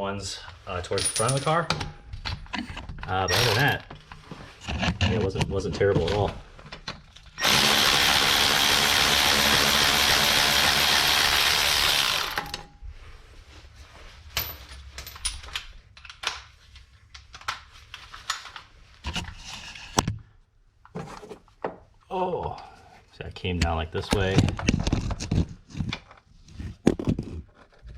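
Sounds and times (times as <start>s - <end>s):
power tool running: 3.3s - 3.9s, 7.4s - 12.7s
metallic clicks of tools and bolts: 14.4s - 16.5s.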